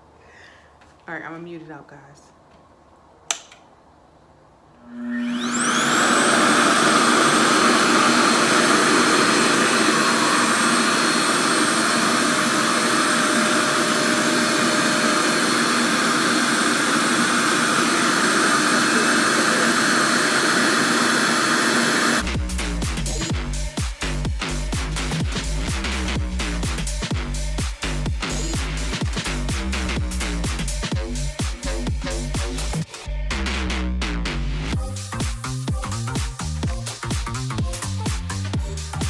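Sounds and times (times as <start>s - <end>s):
blow dryer motor whine: 4.8s - 23.6s.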